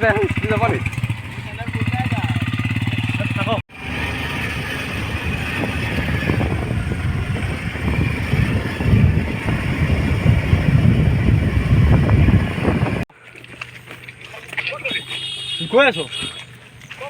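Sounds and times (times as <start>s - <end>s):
scooter engine running: 0.0s - 13.1s
wind buffeting microphone: 3.9s - 13.1s.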